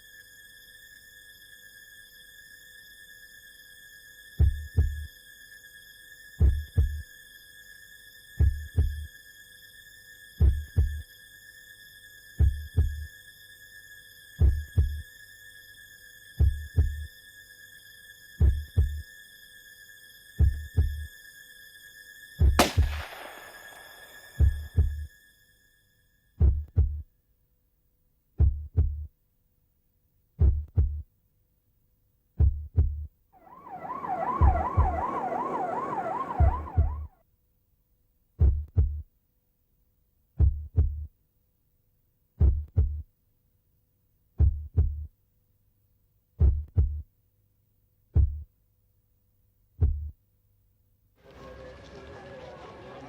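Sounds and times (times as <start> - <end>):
slow heartbeat: 4.4 - 5.1, 6.4 - 7.0, 8.4 - 9.1, 10.4 - 11.0, 12.4 - 13.1, 14.4 - 15.1, 16.4 - 17.1, 18.4 - 19.0, 20.4 - 21.1, 22.4 - 25.1, 26.4 - 27.1, 28.4 - 29.1, 30.4 - 31.1, 32.4 - 33.1, 36.1 - 37.1, 38.4 - 39.1, 40.4 - 41.1, 42.4 - 43.1, 44.4 - 45.1, 46.4 - 47.1, 48.1 - 48.5, 49.8 - 50.2
emergency siren wailing: 33.4 - 37.1.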